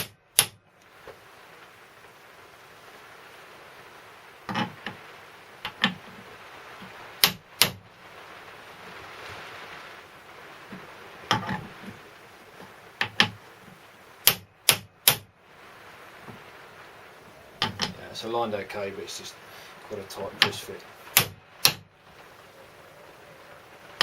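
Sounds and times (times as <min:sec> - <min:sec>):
hammer tapping on metal drift: 0:00.0 - 0:00.6, 0:14.2 - 0:15.3, 0:20.4 - 0:21.9.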